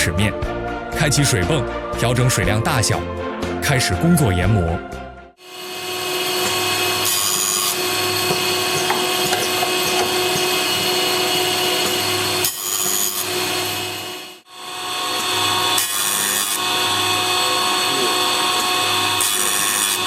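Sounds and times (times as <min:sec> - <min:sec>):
grinding wheel motor running: 0:05.6 - 0:14.0
grinding rasp on saw teeth: 0:05.9 - 0:14.0.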